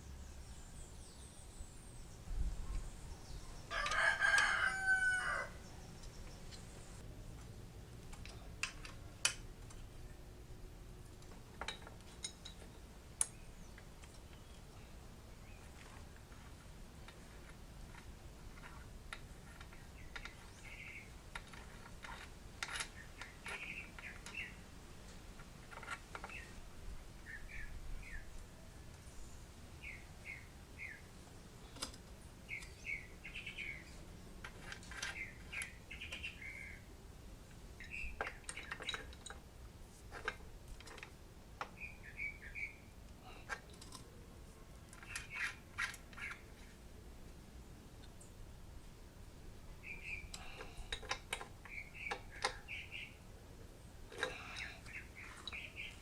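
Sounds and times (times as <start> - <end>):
small birds chirping: 0.0 - 7.0, 12.2 - 24.7, 25.8 - 39.4, 41.6 - 44.0, 44.8 - 46.8, 49.7 - 56.0.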